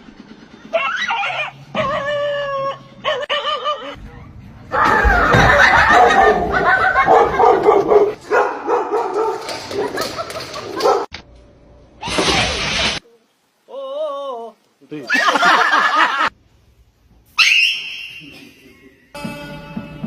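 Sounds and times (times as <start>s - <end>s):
dog crying: 0.7s - 4.0s.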